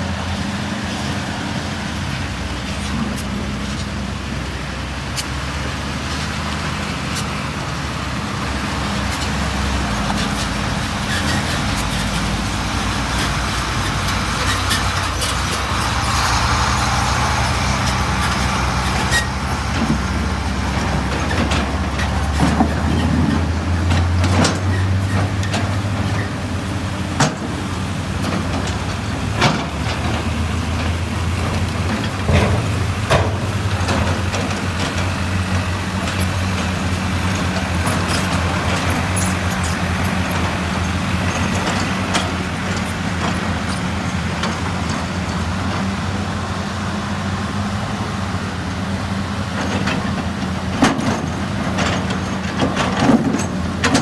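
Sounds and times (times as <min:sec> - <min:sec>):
excavator diesel engine: 0:00.0 - 0:54.0
clanks and knocks: 0:17.9 - 0:26.4, 0:28.2 - 0:45.1, 0:49.5 - 0:54.0.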